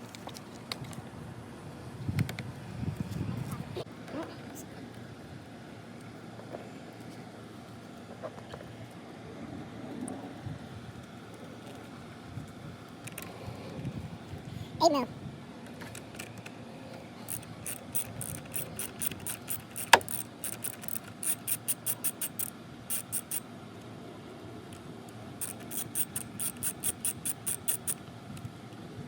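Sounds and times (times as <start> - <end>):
ratchet wrench clicking: 17.3 - 23.4, 25.4 - 28.0.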